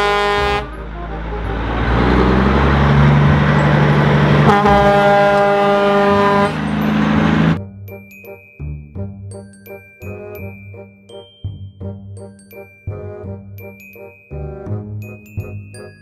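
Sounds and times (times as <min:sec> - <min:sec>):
long horn blast: 0:00.0 - 0:07.6
vehicle rumble: 0:00.0 - 0:07.6.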